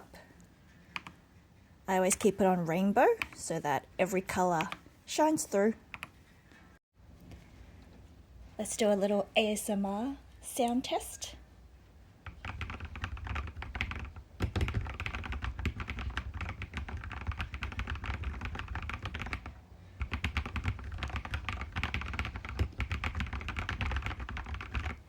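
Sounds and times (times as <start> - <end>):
mechanical keyboard typing: 12.2 - 25.0.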